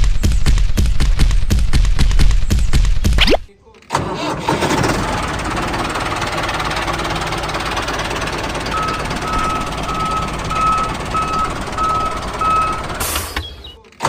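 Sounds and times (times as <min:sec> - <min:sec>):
small vehicle engine running: 0:03.9 - 0:13.7
reversing beeper: 0:08.4 - 0:13.2.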